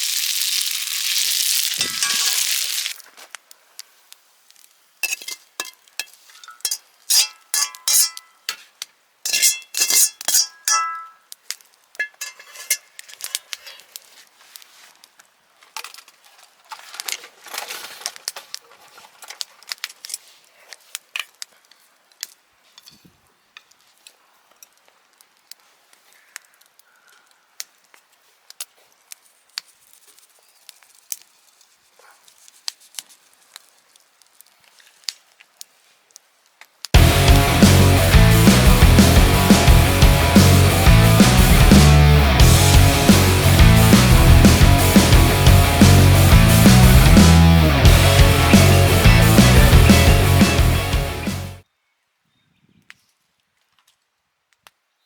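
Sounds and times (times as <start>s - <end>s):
utensils clinking on cookware: 1.8s - 2.5s, 5.0s - 8.7s, 9.3s - 11.2s, 12.0s - 13.8s.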